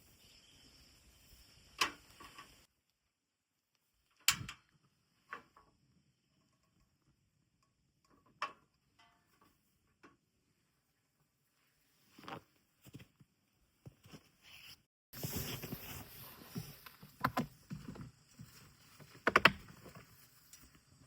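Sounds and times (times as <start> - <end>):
faint hiss: 0.0 - 2.7.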